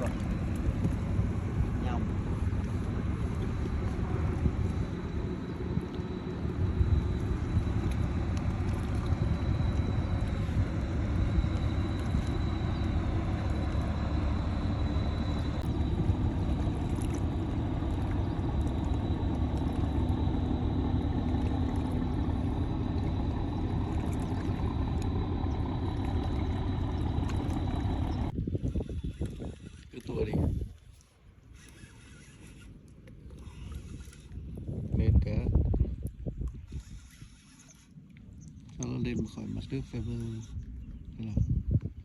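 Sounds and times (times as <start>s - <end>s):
low rumble with hiss: 0.0s - 28.6s.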